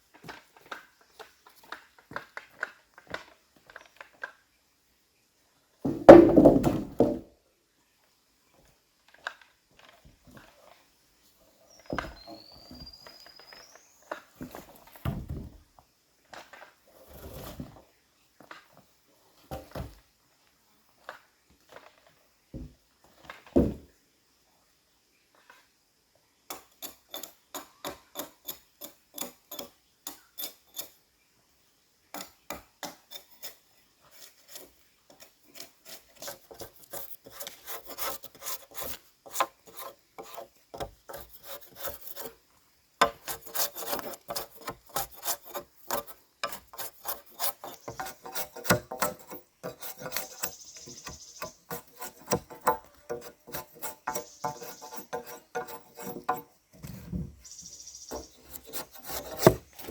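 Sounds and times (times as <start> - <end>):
knocks and scrapes on wood: 5.9 - 7.3, 14.4 - 15.6, 23.5 - 23.9, 32.2 - 42.4, 43.0 - 59.9
hand tool rasping wood: 32.8 - 42.4, 43.0 - 57.0, 58.0 - 59.9.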